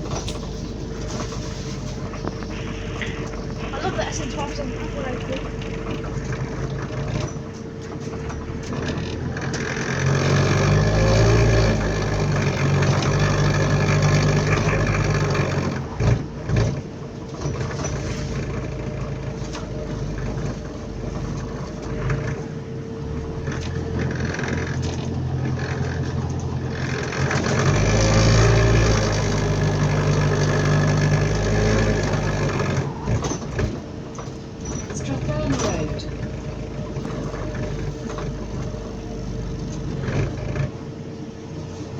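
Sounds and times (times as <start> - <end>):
steady whine: 0.0 - 10.3
bus engine droning: 0.0 - 41.9
rattly bus cabin: 0.0 - 41.9.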